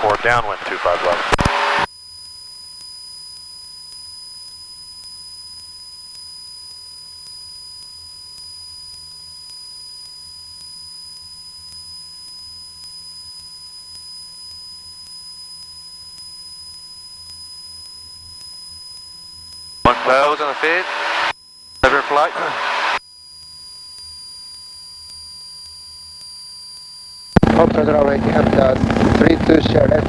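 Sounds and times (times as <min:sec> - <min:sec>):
high-pitched electronic whine: 0:01.2 - 0:01.9, 0:19.9 - 0:23.0, 0:23.7 - 0:30.0
muffled aircraft engine drone: 0:19.9 - 0:23.0, 0:27.4 - 0:30.0.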